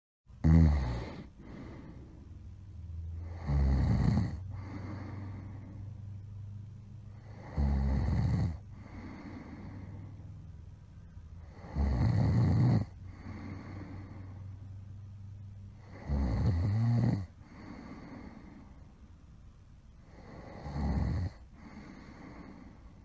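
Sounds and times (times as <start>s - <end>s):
person snoring loudly: 0.4s - 2.0s, 3.2s - 5.7s, 7.2s - 10.0s, 11.4s - 14.3s, 15.8s - 18.5s, 20.1s - 22.7s
quiet breathing: 0.4s - 23.0s.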